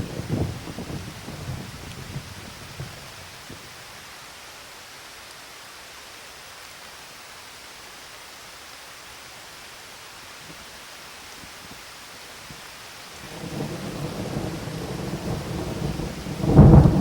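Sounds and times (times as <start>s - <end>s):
thunder rumble: 0.0s - 3.6s, 13.2s - 17.0s
steady rain hiss: 0.0s - 17.0s.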